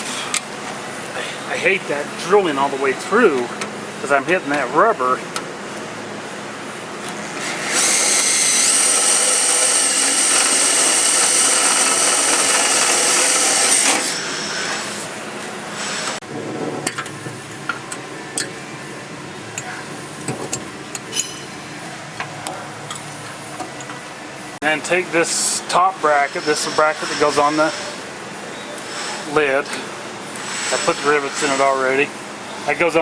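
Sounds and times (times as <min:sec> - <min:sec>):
power drill whining: 0:07.4 - 0:15.0
parts clicking and knocking: 0:16.8 - 0:18.9, 0:19.5 - 0:24.0.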